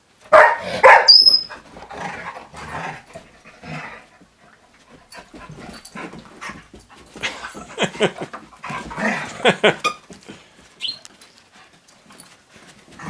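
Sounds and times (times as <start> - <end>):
brief high whistle: 1.1 - 1.5.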